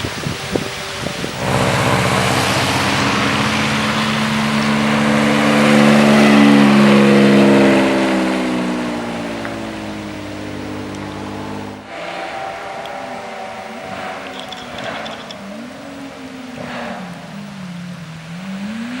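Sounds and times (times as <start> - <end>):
car engine accelerating past: 0.8 - 19.0.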